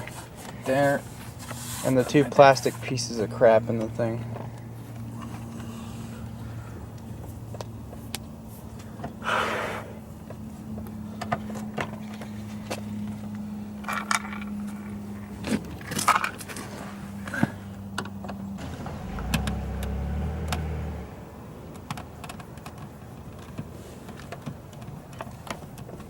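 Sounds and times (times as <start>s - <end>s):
steady low hum: 0.0s - 19.8s.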